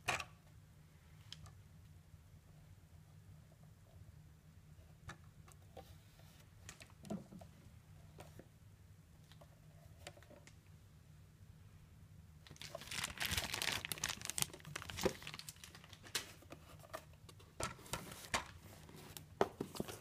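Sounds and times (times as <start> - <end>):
packaging crinkling and rustling: 12.5 - 20.0.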